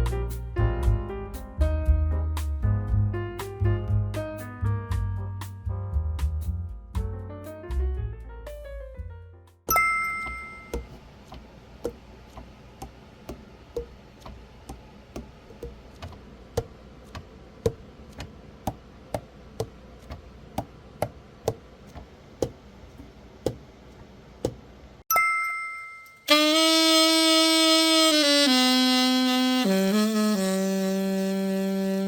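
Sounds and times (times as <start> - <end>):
saxophone keys clacking: 26.0 - 30.8.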